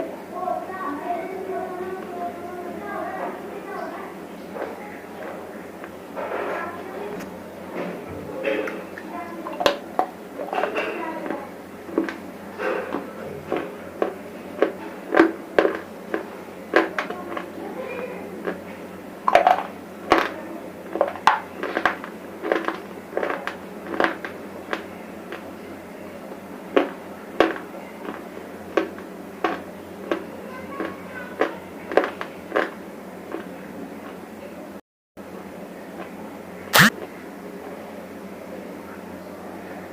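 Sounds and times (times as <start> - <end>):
crunchy food being chewed: 9.7 - 34.2.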